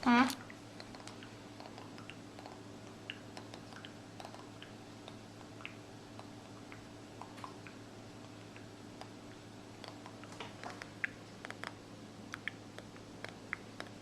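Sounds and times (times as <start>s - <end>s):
child's mouth clicks and smacks: 0.3s - 2.6s, 3.4s - 4.5s, 9.8s - 14.0s.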